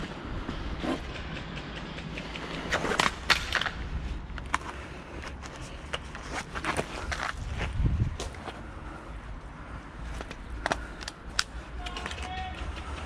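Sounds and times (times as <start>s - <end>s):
sharp clicks and snaps: 1.0s - 3.7s
footsteps on rough ground: 2.2s - 9.1s.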